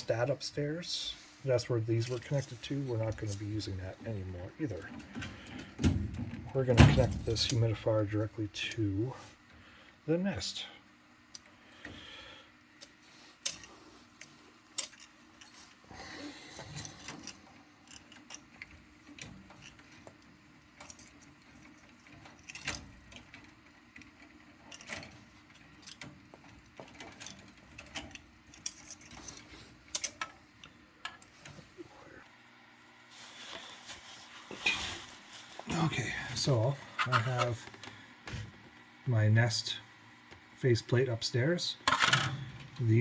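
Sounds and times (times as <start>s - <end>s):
hands handling small metal parts: 12.8s - 15.8s, 16.5s - 30.3s.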